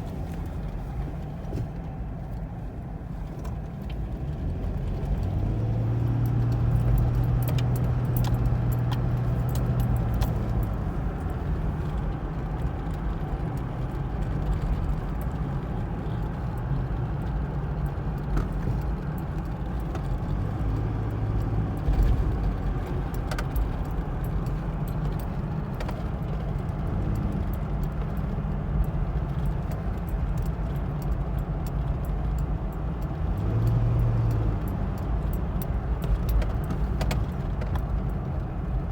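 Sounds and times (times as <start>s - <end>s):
light ticks and rattles: 0.0s - 38.9s.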